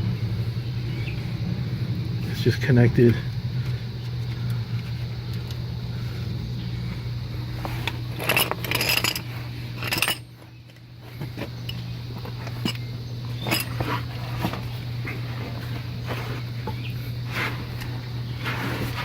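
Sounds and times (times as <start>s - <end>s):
steady low hum: 0.0s - 19.0s
metallic clinks of tools: 8.2s - 10.3s.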